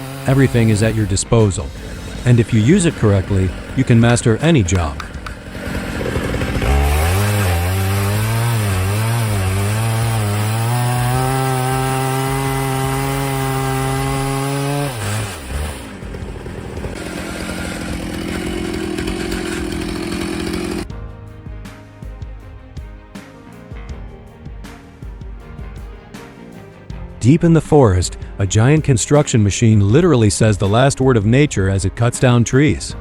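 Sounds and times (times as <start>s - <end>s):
music: 0.0s - 20.1s, 20.7s - 33.0s
chainsaw running at high revs: 0.0s - 20.9s.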